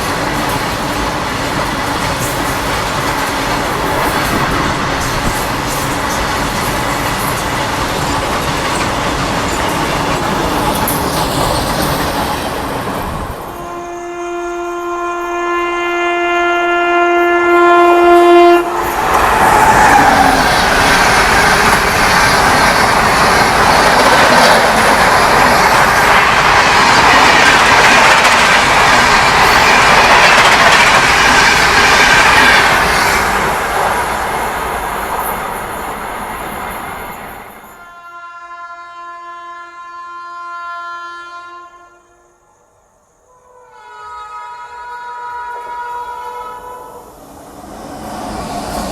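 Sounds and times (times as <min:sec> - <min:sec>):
train wheels clattering on rails: 0:00.0 - 0:13.6, 0:18.8 - 0:37.8
train horn blast: 0:13.4 - 0:19.1, 0:37.8 - 0:42.6, 0:43.3 - 0:47.1.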